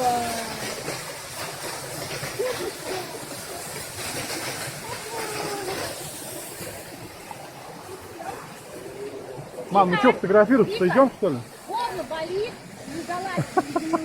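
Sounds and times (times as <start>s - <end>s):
waterfall rushing: 0.0s - 14.0s
faint voices: 4.8s - 6.4s.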